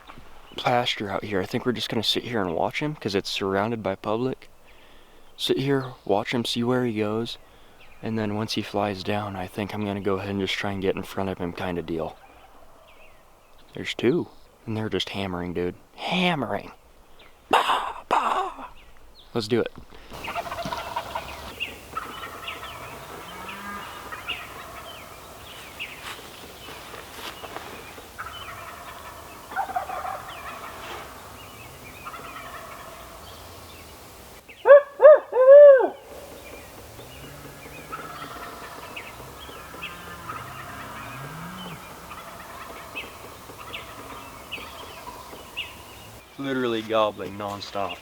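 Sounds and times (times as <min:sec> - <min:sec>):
close turkey calls: 0:00.0 - 0:14.6, 0:16.7 - 0:48.0
distant turkeys gobbling: 0:20.1 - 0:48.0.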